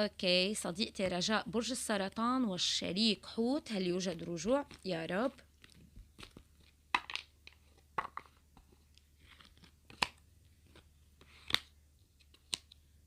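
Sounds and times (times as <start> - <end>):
faint card rustling: 4.1 - 12.9
cards clicking and snapping: 5.5 - 12.8.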